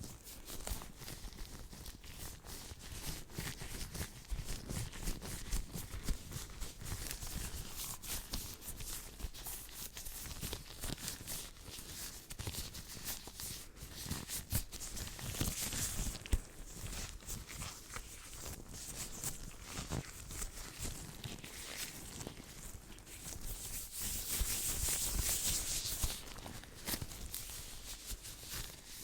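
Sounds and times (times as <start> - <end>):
hands rubbing near microphone: 13.0 - 29.0.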